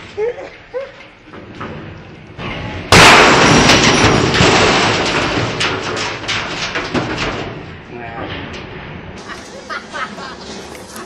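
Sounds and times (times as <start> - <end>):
sheet metal clattering and rattling: 1.1 - 11.0
washing machine crashing: 2.9 - 7.6.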